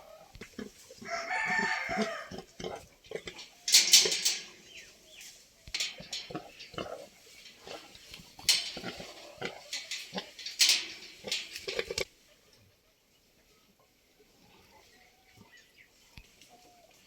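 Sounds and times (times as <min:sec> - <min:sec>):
pigs grunting and squealing: 0:00.0 - 0:04.5, 0:05.8 - 0:12.0
clattering: 0:03.7 - 0:04.8, 0:05.8 - 0:12.1.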